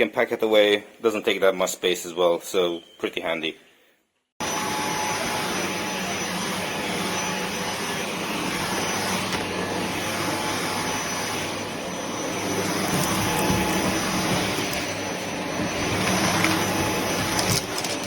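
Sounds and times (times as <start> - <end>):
vacuum cleaner motor running: 4.4 - 18.0.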